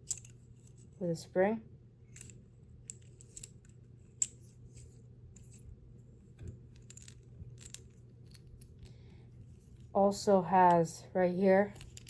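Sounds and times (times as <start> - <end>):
metal pen clicks and scrapes: 0.0 - 0.8, 11.7 - 12.0
faint steady hum: 0.0 - 12.0.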